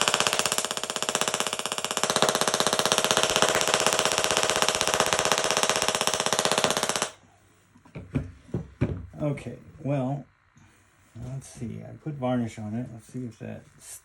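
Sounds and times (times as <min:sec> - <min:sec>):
tesla coil sparks buzzing: 0:00.0 - 0:07.2.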